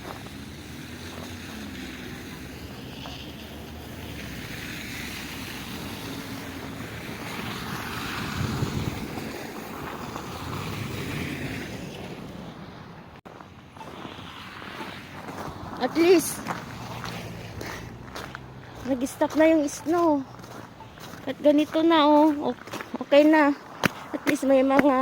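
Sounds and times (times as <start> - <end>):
road traffic passing: 0.0 - 25.0
wind on microphone: 5.3 - 13.1.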